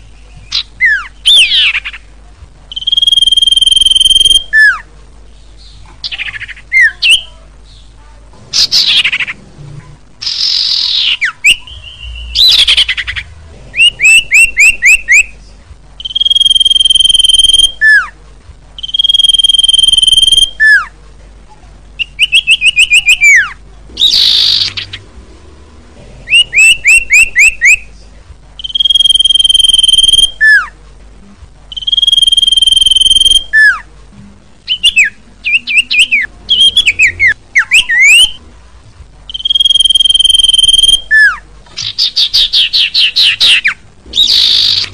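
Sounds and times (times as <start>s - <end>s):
bird chirps and whistles: 0.5s - 2.0s, 2.7s - 4.8s, 10.2s - 15.3s, 16.0s - 18.1s, 18.8s - 20.9s, 22.0s - 25.0s, 26.3s - 27.8s, 28.6s - 30.7s, 31.7s - 33.8s, 34.7s - 38.4s, 39.3s - 44.9s
harsh bird notes: 2.7s - 4.9s, 8.5s - 15.4s, 16.0s - 18.2s, 22.0s - 27.9s, 28.6s - 30.8s, 31.7s - 33.9s, 34.6s - 38.5s, 39.3s - 44.9s.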